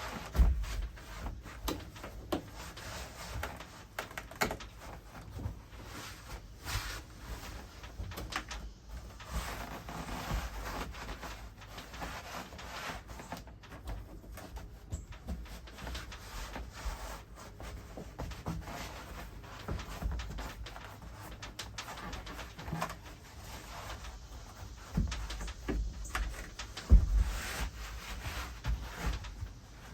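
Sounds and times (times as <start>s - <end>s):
rustling and scraping: 0.0s - 29.9s.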